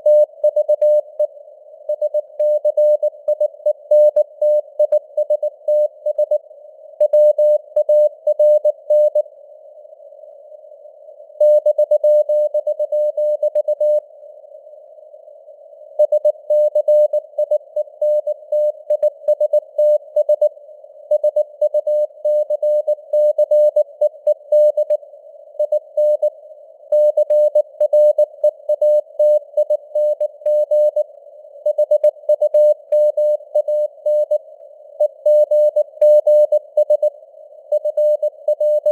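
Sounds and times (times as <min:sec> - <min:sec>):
faint radio noise hiss: 0:01.0 - 0:07.0, 0:07.6 - 0:11.4, 0:12.4 - 0:38.9
morse code beeps: 0:37.8 - 0:38.9.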